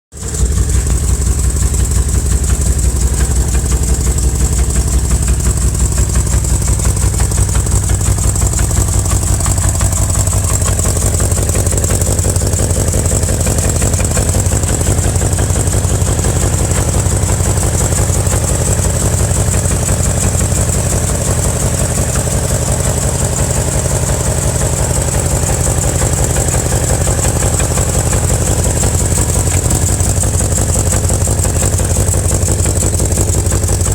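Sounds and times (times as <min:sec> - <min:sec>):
car engine idling: 0:00.1 - 0:33.9
engine knocking: 0:00.1 - 0:33.9.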